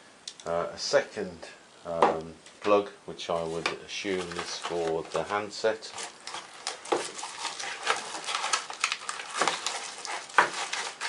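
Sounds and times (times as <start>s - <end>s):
packaging and plastic parts rustling: 3.4s - 11.0s.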